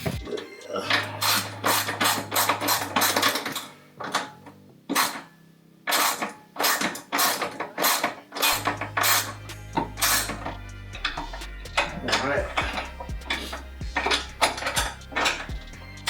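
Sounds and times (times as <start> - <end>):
ratchet wrench clicking: 5.9 - 12.0.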